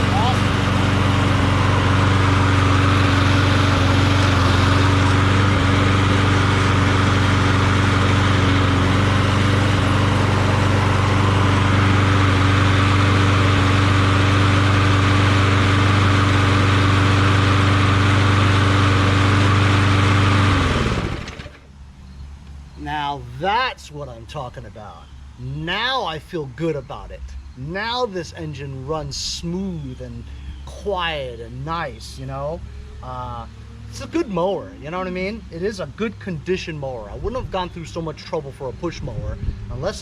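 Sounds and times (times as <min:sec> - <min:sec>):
lawn mower engine running: 0:00.0 - 0:21.8.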